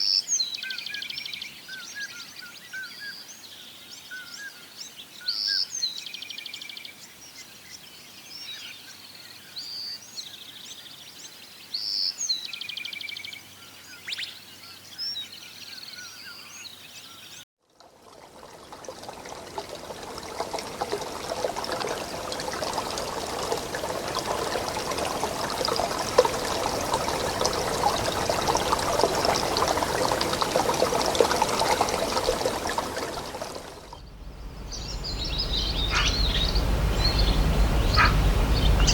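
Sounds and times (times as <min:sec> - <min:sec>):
running water rushing: 0:17.8 - 0:38.9
birds chirping and trilling: 0:22.7 - 0:38.9.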